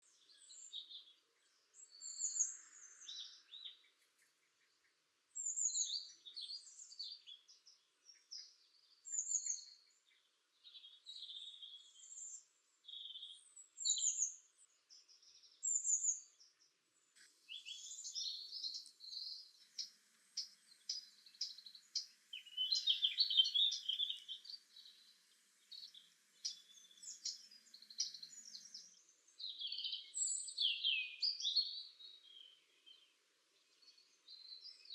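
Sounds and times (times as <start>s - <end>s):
songbirds chirping and trilling: 0.0s - 34.9s.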